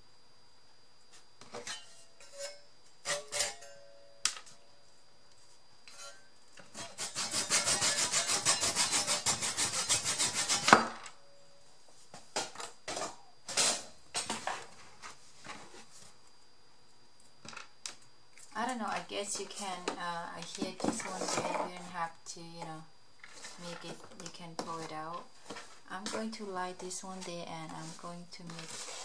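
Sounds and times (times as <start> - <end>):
hand saw cutting wood: 6.8 - 10.8.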